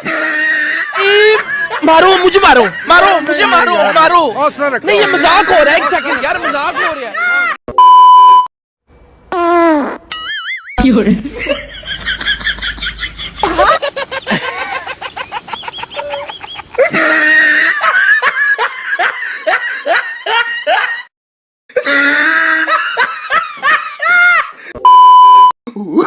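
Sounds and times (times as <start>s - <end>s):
loud laughter: 0.0s - 4.2s, 4.9s - 7.6s, 11.2s - 21.1s, 21.7s - 24.8s.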